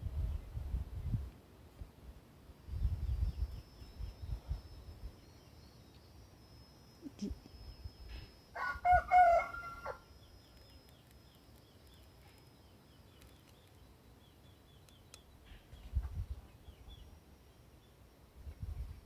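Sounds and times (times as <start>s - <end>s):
chicken crowing: 8.6s - 10.1s.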